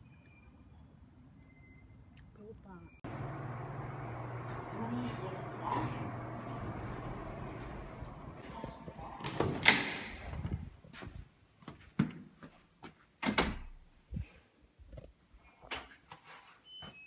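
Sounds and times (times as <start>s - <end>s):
background noise: 8.4s - 17.0s.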